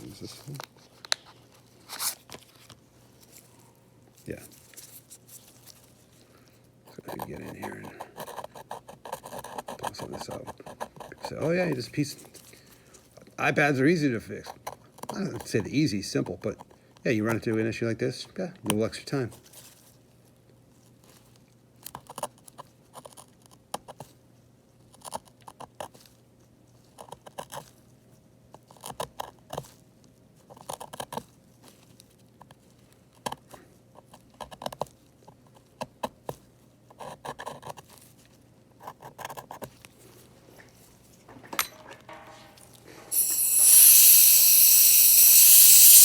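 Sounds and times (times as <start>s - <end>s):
metal tool scraping glass: 43.1s - 46.0s.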